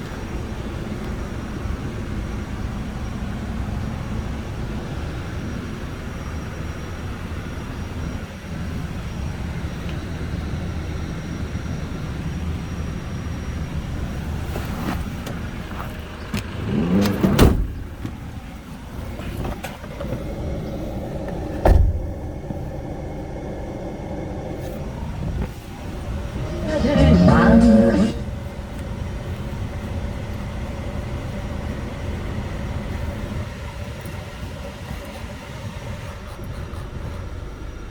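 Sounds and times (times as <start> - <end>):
diesel engine running: 10.9 - 37.9.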